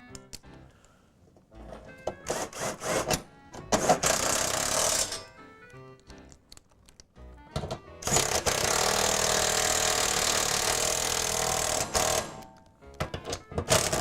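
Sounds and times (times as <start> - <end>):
handling clicks: 0.0 - 2.3, 5.3 - 8.1
power drill driving a screw: 3.8 - 5.3, 8.0 - 12.5, 13.7 - 14.0.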